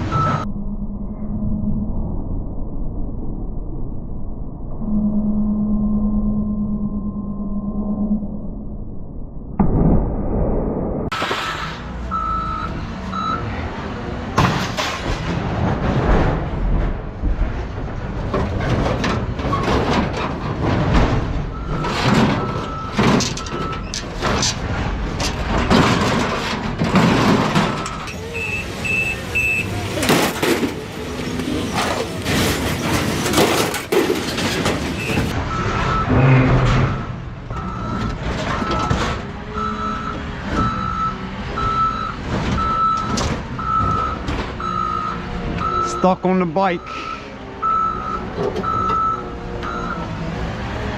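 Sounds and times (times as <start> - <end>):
reversing alarm beeping: 0.0 - 2.4, 4.7 - 8.8, 12.1 - 13.5, 21.5 - 23.9, 27.8 - 29.8, 35.0 - 50.2
scrap metal clattering and banging: 14.4 - 28.1, 29.9 - 39.4.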